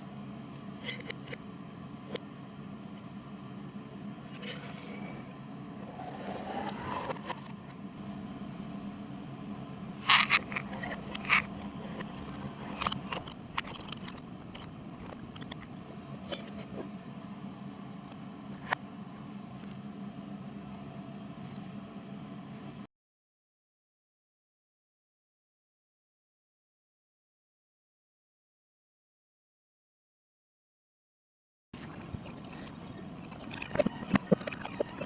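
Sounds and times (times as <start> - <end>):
utensils clicking and scraping: 10.0 - 16.9.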